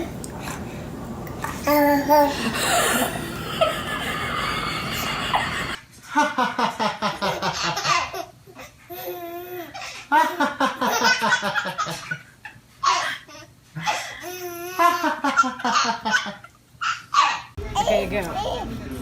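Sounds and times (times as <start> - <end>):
baby laughing: 1.6 - 5.8.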